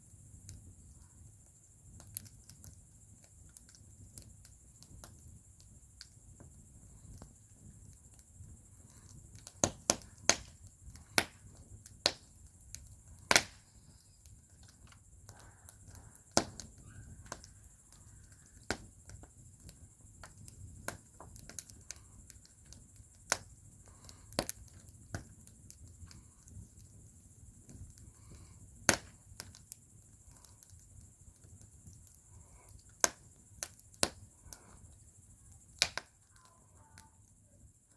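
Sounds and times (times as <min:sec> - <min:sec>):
faint steady hiss: 0:00.0 - 0:37.9
wood fire crackling and popping: 0:00.2 - 0:37.6.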